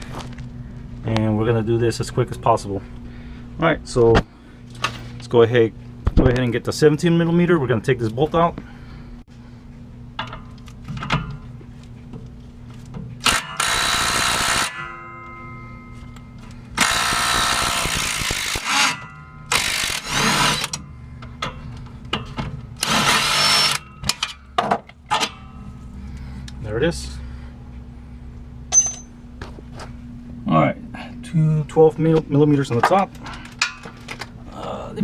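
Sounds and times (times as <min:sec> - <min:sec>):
power drill driving a socket: 0:13.2 - 0:14.7, 0:16.8 - 0:20.8, 0:22.8 - 0:23.8.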